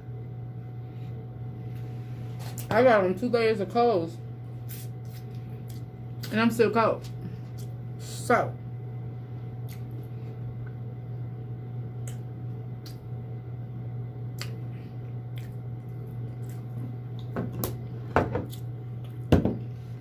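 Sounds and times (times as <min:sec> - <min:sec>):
heating low hum: 0:00.0 - 0:20.0
person chewing food: 0:09.6 - 0:10.8, 0:14.3 - 0:17.4.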